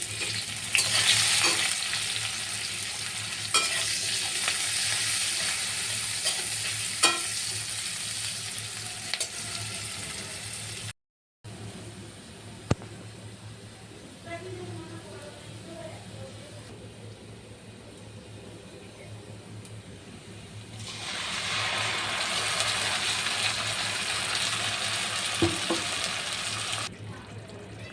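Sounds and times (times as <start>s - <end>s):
food sizzling in hot oil: 0.0s - 10.9s, 20.6s - 26.9s.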